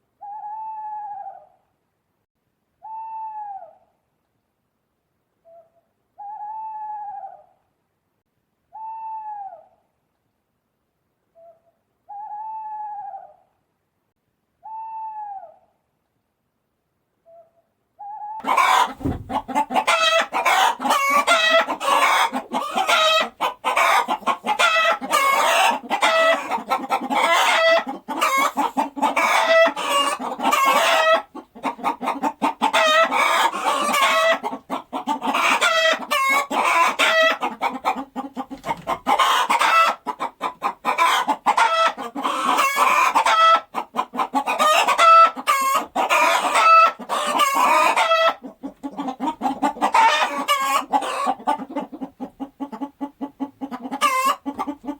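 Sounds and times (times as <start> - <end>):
chickens clucking: 18.0 - 54.9.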